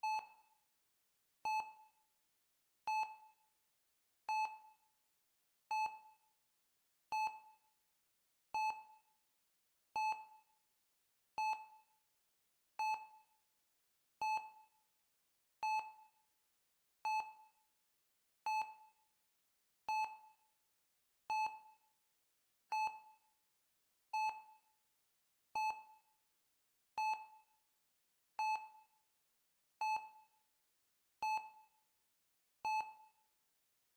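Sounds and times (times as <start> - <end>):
heart rate monitor beeping: 0.0 - 0.3, 32.6 - 33.1.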